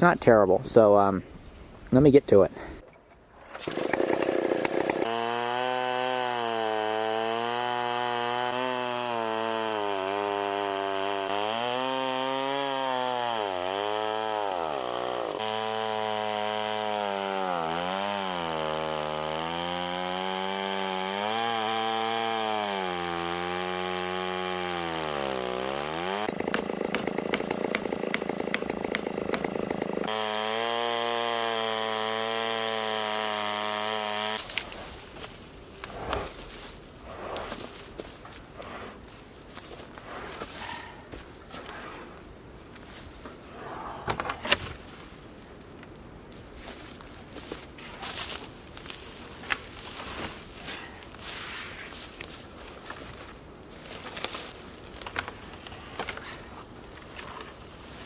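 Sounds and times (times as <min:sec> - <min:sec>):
chainsaw cutting log: 0:03.4 - 0:42.1, 0:47.4 - 0:53.2.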